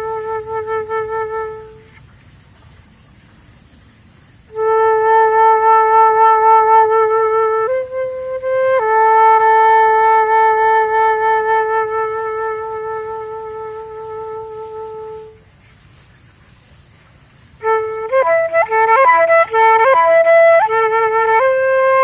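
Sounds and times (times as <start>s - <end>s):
solo flute: 0.0s - 2.0s, 4.5s - 15.5s, 17.6s - 22.0s.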